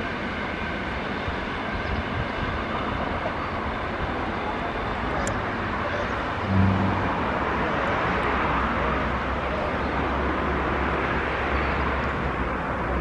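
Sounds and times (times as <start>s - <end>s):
train rumbling through station: 0.0s - 13.0s
deep drone: 5.0s - 10.8s
short low tone: 5.9s - 8.0s.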